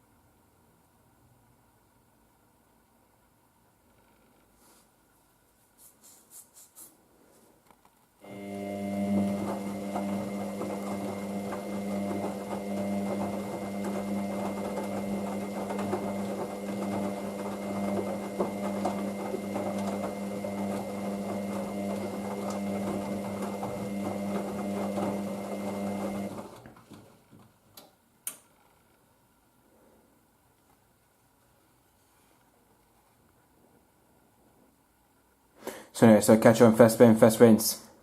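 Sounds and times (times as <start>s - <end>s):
washing machine drum humming: 8.2s - 26.8s.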